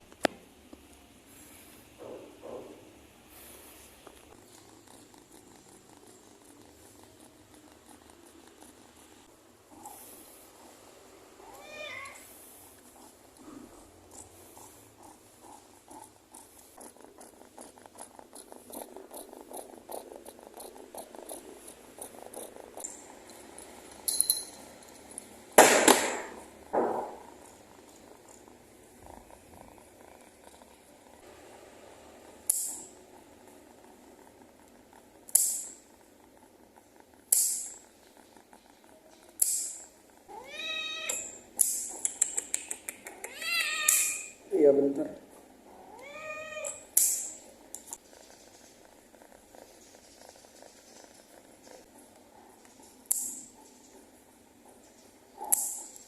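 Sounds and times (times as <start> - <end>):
cat purring: 1.3 - 56.0
cat meowing: 11.4 - 12.3, 40.3 - 41.4, 43.2 - 44.4, 45.9 - 46.8
cat hissing: 42.0 - 44.4.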